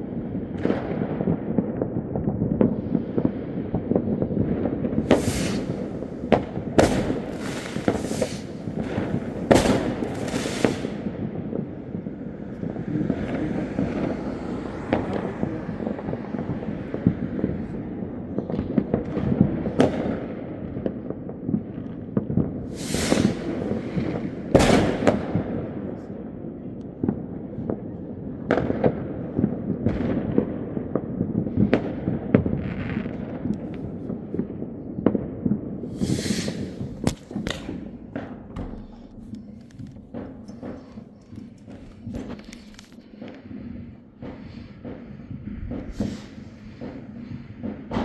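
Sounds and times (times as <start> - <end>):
fireworks bangs and crackles: 0.0 - 48.0
hissing firework bursts: 4.9 - 18.1, 22.6 - 25.4, 35.8 - 48.0.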